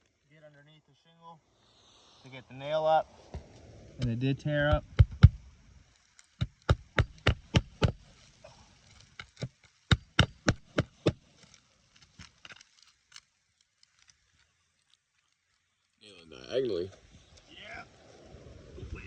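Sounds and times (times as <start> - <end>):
hammer striking nail: 6.4 - 8.0, 9.9 - 11.2.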